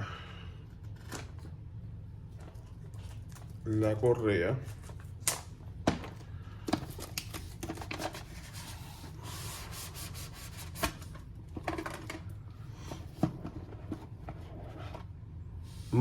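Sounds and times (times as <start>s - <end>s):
cardboard packaging rustling: 6.8s - 12.2s.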